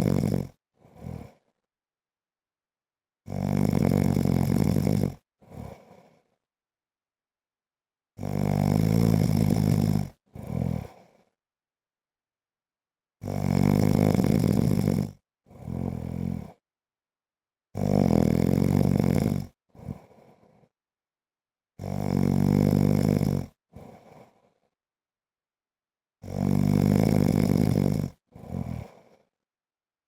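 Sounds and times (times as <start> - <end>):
man snoring: 0.0 - 1.5, 3.3 - 6.3, 8.2 - 11.2, 13.2 - 16.6, 17.8 - 20.6, 21.8 - 24.5, 26.2 - 29.2.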